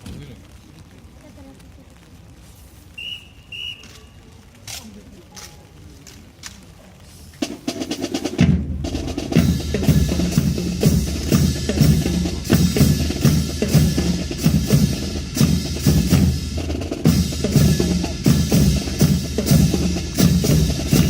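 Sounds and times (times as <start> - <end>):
marching snare and bass drums: 7.4 - 21.0
snare drum roll: 7.4 - 21.0.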